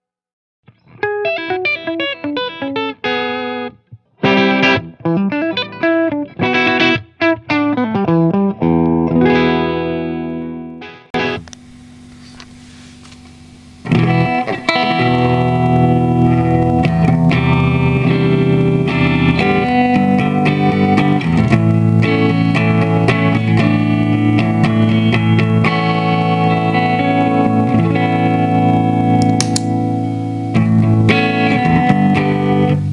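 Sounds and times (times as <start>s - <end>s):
electric guitar chords and notes: 0.6s - 32.9s
low hiss: 11.2s - 26.5s.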